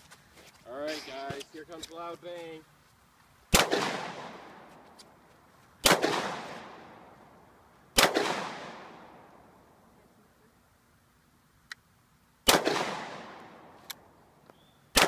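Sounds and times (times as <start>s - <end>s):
pistol shots with echo: 3.5s - 4.6s, 5.8s - 7.0s, 8.0s - 9.3s, 12.5s - 13.7s.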